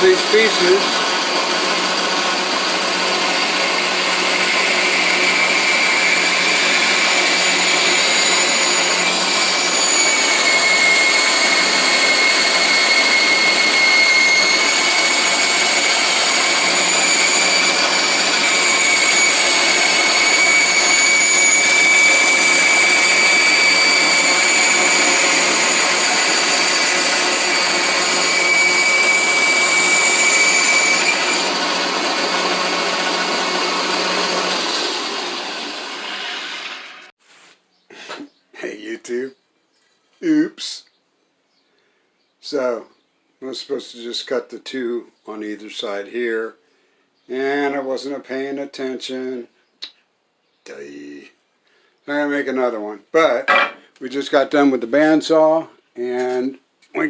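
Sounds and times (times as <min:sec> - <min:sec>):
bandsaw whining cutting wood: 0:00.0 - 0:37.1.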